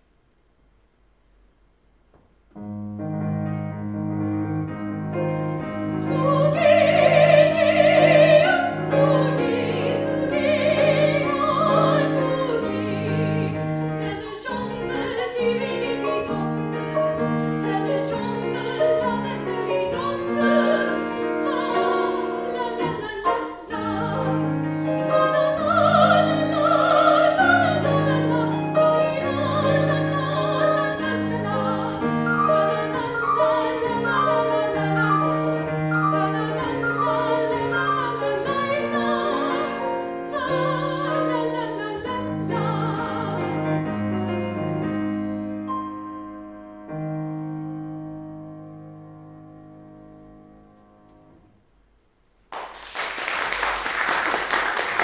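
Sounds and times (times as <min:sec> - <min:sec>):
piano repeated chords: 0:01.7 - 0:52.2
trained singer with vibrato: 0:06.0 - 0:16.9, 0:17.6 - 0:43.6.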